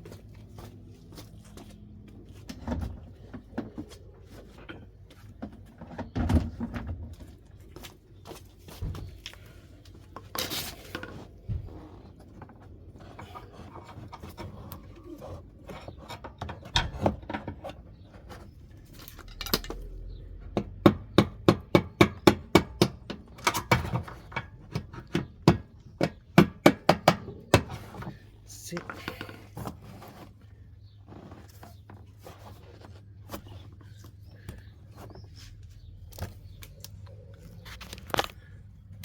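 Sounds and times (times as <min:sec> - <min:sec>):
hand tool clicks and scraping: 0:15.7 - 0:19.9, 0:22.8 - 0:30.3.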